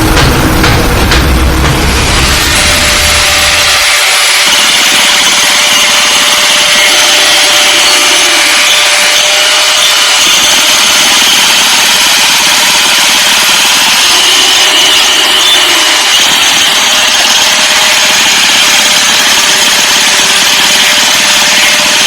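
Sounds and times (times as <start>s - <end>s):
low rumble: 0.0s - 3.9s
power tool hissing and whining: 0.0s - 22.0s.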